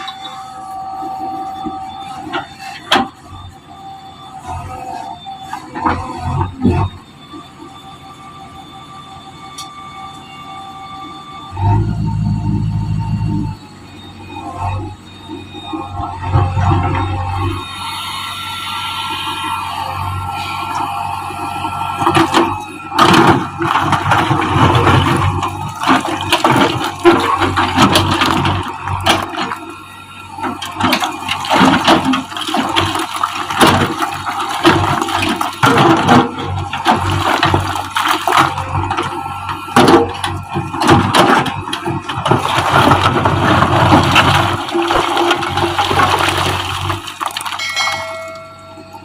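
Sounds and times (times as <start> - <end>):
diesel engine humming: 0.0 - 49.0
earth and rubble crashing: 22.0 - 48.4.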